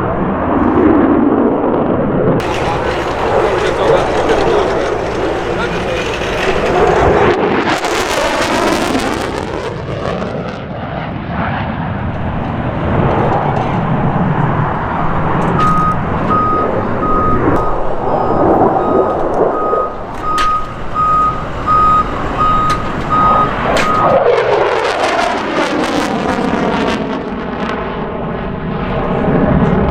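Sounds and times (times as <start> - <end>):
fighter jet engine roar: 0.0 - 29.9
vehicle reversing beeper: 2.4 - 7.2, 15.5 - 24.2.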